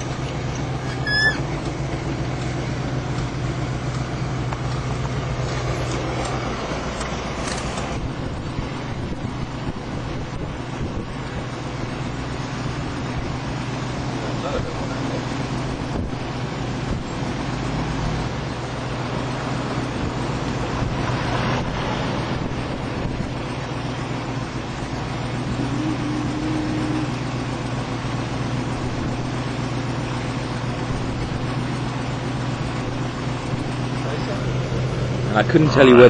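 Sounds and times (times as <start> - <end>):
vehicle engine humming: 0.0 - 36.0.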